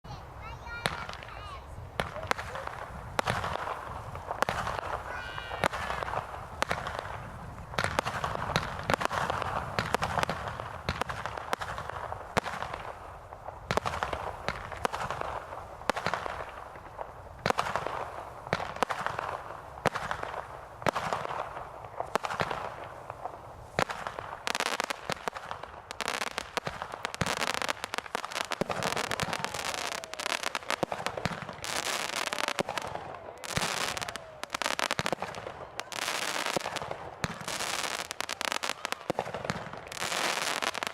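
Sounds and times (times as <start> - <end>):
fireworks bursts with crackle: 0.0 - 40.9
falling firework whistles: 27.1 - 39.1.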